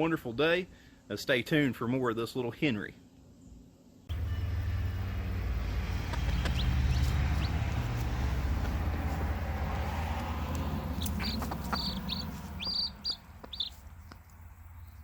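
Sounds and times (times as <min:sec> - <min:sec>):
low rumble: 0:04.1 - 0:14.9
bird chirping: 0:05.8 - 0:15.0.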